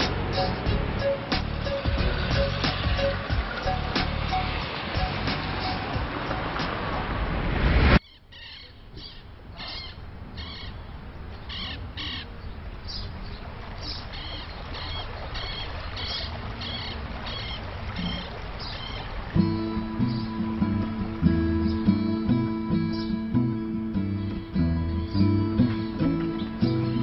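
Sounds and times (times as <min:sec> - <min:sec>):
loud rushing noise: 0:00.0 - 0:08.0.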